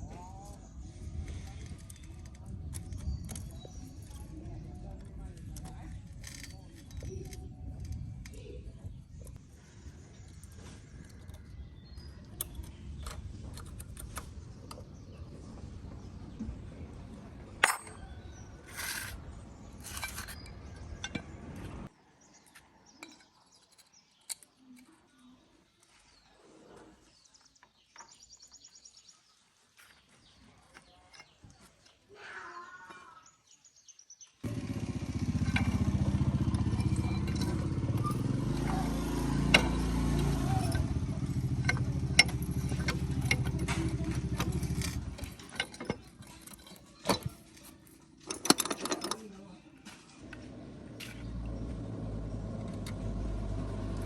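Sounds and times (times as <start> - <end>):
engine rumbling: 0.0 - 21.9, 34.4 - 54.0.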